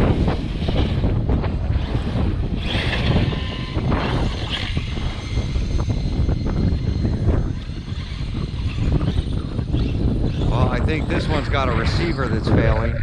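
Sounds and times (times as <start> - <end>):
electric toy car motor whining: 0.0 - 11.4
wind buffeting microphone: 0.0 - 13.0.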